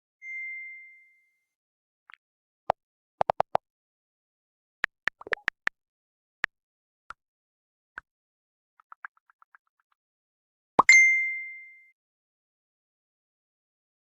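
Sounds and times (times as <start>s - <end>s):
clear chime: 0.2s - 1.5s, 10.8s - 12.0s.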